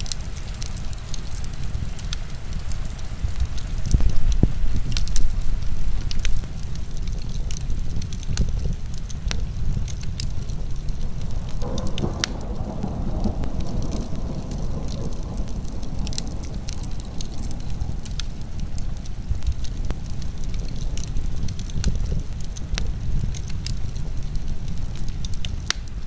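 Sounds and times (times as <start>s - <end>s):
heavy rain rumble: 0.0s - 26.0s
wood fire crackling and popping: 0.0s - 26.0s
rushing hiss: 9.7s - 21.4s.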